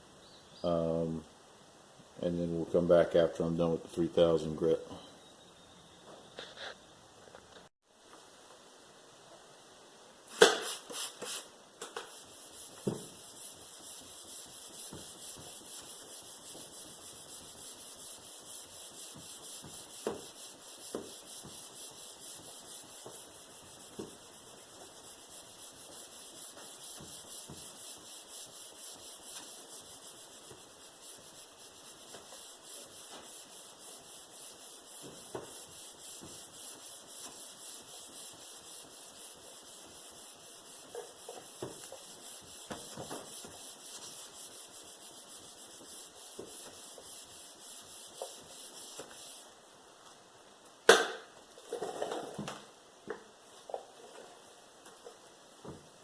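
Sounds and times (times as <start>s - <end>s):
sandpaper sanding plastic: 10.4s - 49.4s.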